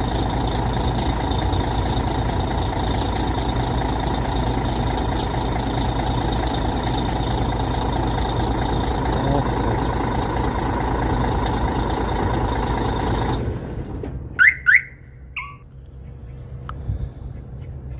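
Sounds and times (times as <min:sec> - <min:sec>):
diesel engine idling: 0:00.0 - 0:17.9
short alarm beep: 0:14.4 - 0:15.6
alarm rising chirps: 0:14.4 - 0:15.7.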